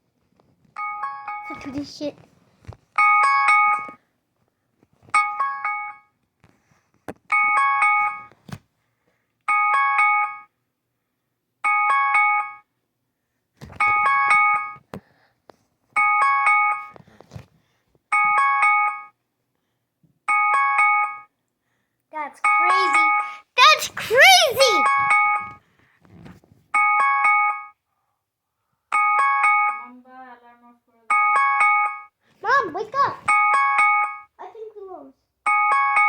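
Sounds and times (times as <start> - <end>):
phone alarm electronic chimes: 3.0 - 4.0, 7.3 - 8.3, 9.5 - 10.5, 11.6 - 12.6, 13.8 - 14.8, 16.0 - 17.0, 18.1 - 19.2, 20.3 - 21.3, 22.4 - 25.6, 26.8 - 27.8, 28.9 - 29.9, 31.1 - 32.2, 33.2 - 34.3, 35.5 - 36.0.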